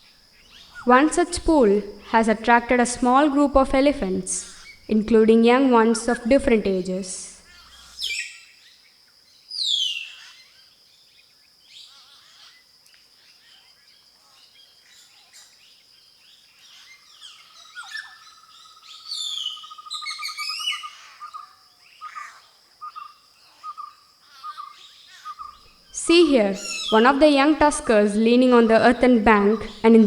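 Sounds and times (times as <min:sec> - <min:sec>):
birds calling and chirping: 0:16.6 - 0:30.0.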